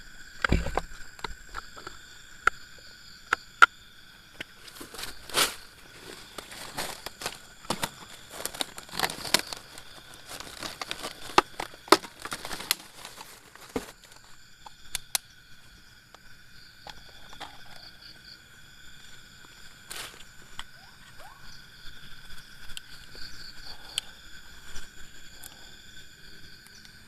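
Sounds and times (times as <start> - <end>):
rustling: 4.6 - 14.4, 19.8 - 20.5
plastic crinkling: 4.7 - 14.4.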